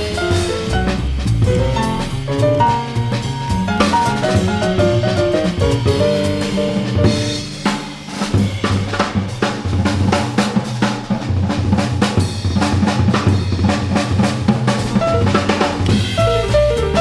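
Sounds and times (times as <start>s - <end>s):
double bass: 0.0s - 17.0s
jazz drum kit playing: 0.0s - 17.0s.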